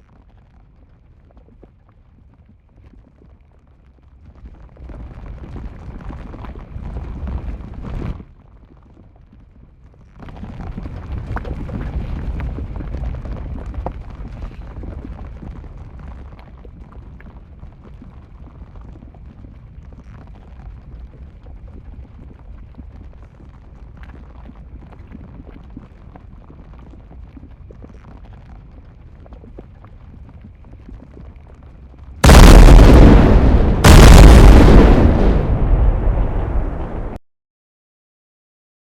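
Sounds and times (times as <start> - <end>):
volcanic eruption rumble: 4.2 - 37.2
sharp cracks: 32.2 - 37.0.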